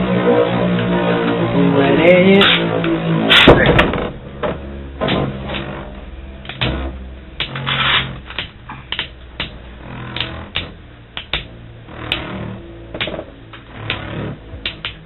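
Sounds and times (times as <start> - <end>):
spinning tops scraping grind: 6.6 - 8.8.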